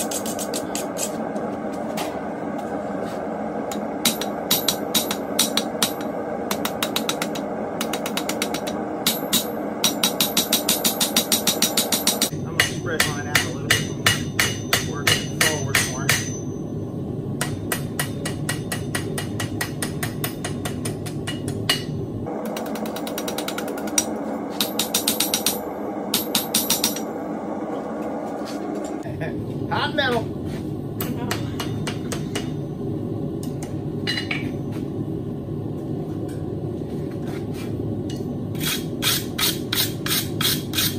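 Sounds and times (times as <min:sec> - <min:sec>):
hammer striking metal on anvil: 0:03.7 - 0:16.6, 0:17.4 - 0:27.1, 0:31.0 - 0:32.7, 0:33.4 - 0:34.6.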